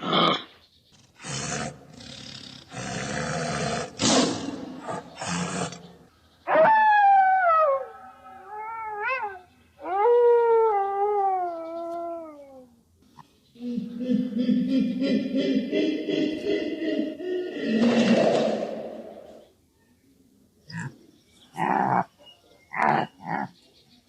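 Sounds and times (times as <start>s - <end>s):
harsh animal call bursts: 0.0s - 8.8s
long falling animal calls: 1.2s - 12.8s.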